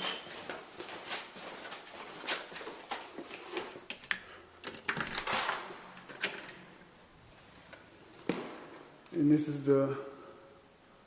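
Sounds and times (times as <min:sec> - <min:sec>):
rustling: 0:04.9 - 0:09.1.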